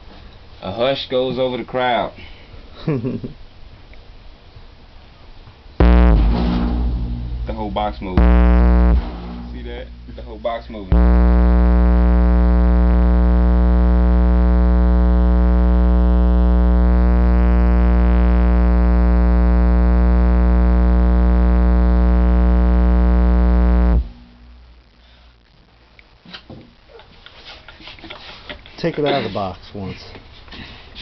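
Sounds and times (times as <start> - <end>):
loud distorted subwoofer hum: 5.8 - 26.8.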